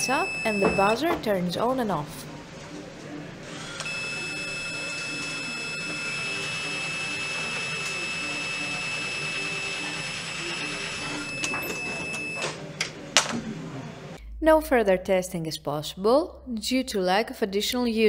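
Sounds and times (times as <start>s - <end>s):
high-pitched buzzer tone: 0.0s - 1.1s, 3.9s - 12.5s.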